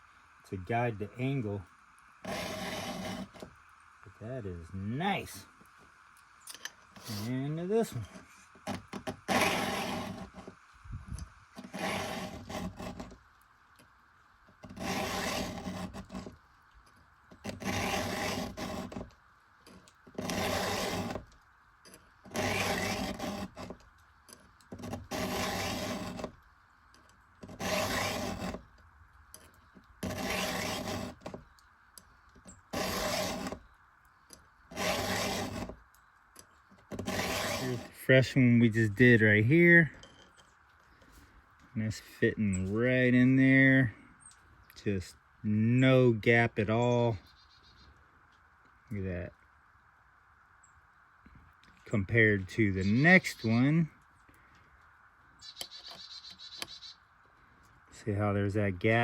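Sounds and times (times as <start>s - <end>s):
file scraping chainsaw chain: 2.2s - 3.6s, 6.5s - 10.6s, 11.6s - 13.2s, 14.6s - 16.4s, 17.4s - 19.1s, 19.7s - 21.3s, 21.9s - 23.8s, 24.7s - 26.4s, 27.4s - 28.6s, 30.0s - 31.4s, 32.4s - 33.6s, 34.7s - 35.8s, 36.8s - 38.8s.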